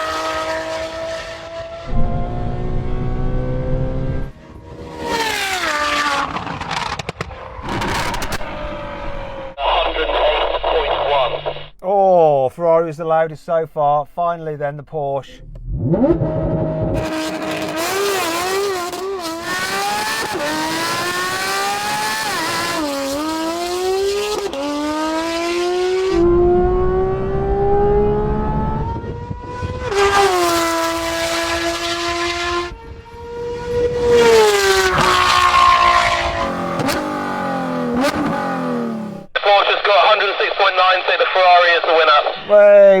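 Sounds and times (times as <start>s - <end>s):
sports car engine at full throttle: 0.0s - 9.6s, 15.4s - 39.4s.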